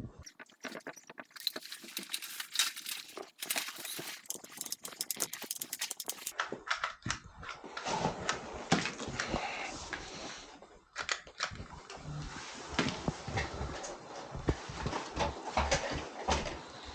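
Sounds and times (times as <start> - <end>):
crackling and rustling: 0.1 - 6.4.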